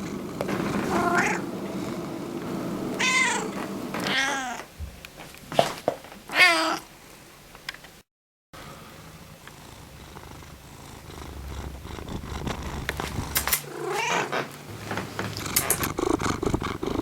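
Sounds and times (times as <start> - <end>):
cat purring: 0.0 - 4.0, 9.2 - 17.0
cat meow: 0.9 - 1.4, 3.0 - 4.7, 6.3 - 6.9, 13.8 - 14.4.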